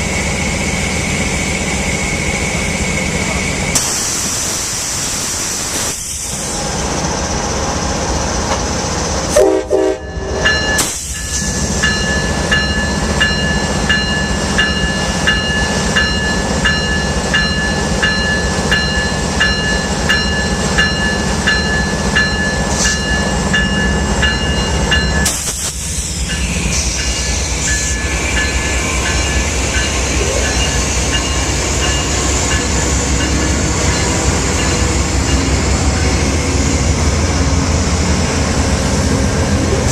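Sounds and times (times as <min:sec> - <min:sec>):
diesel locomotive rumble: 0:00.0 - 0:39.9
locomotive horn: 0:09.3 - 0:10.3
electronic locomotive bell ringing: 0:09.7 - 0:25.4, 0:26.2 - 0:36.4.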